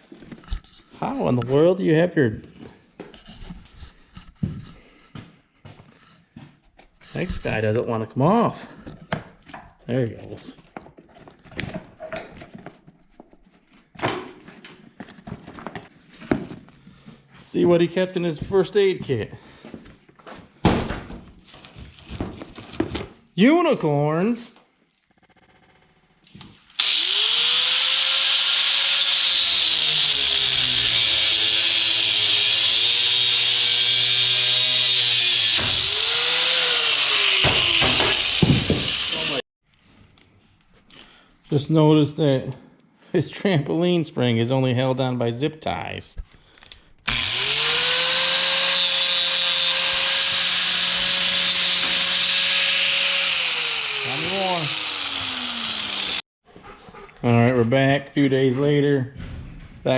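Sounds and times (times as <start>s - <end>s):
angle grinder cutting metal: 26.7s - 39.4s, 47.1s - 56.2s.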